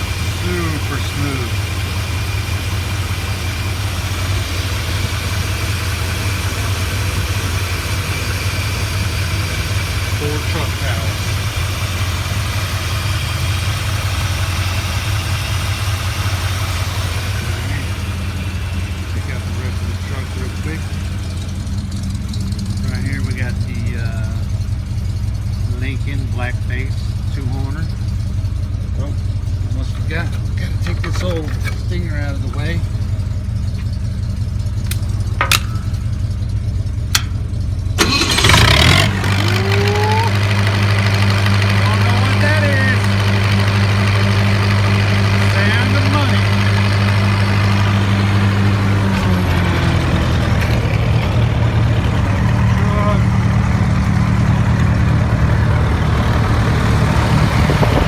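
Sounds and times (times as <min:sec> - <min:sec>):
truck engine idling: 0:00.0 - 0:58.0.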